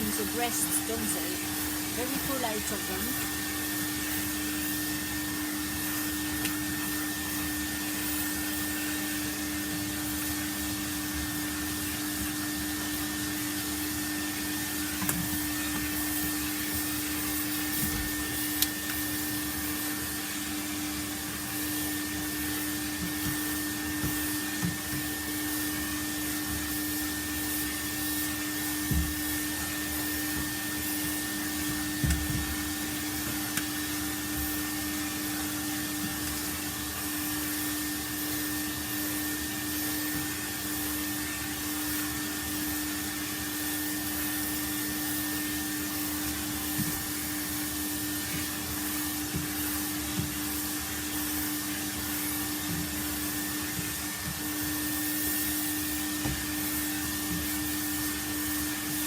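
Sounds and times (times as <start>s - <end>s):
vacuum cleaner running: 0.0s - 59.0s.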